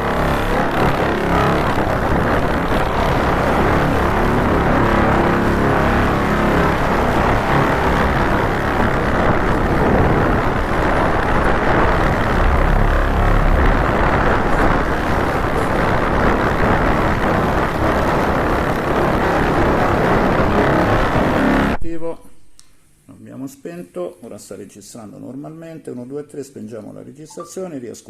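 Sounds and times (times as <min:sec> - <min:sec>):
loud rumbling noise: 0:00.0 - 0:21.9.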